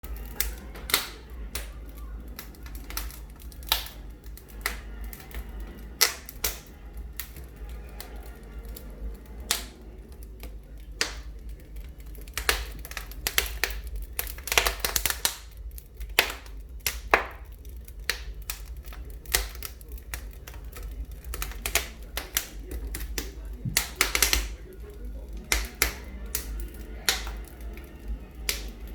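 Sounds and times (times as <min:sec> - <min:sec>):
fire popping and snapping: 0:00.0 - 0:28.9
wood fire crackling: 0:00.0 - 0:28.9
steady low hum: 0:15.5 - 0:28.9.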